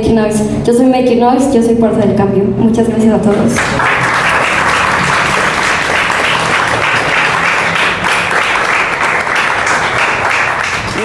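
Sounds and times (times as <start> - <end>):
audience applauding: 3.6 - 11.0.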